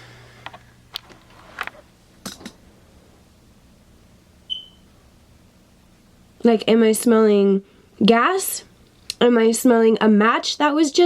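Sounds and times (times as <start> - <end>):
short high electronic beep: 4.5 - 4.8.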